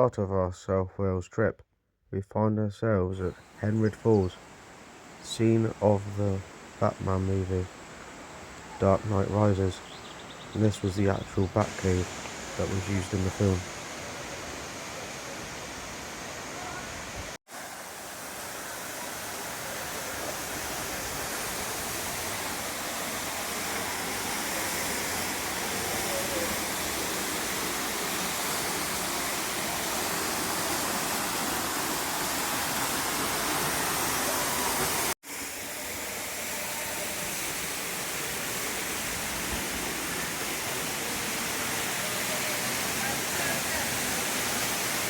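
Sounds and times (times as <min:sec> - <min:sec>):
waterfall rushing: 0:10.7 - 0:45.0.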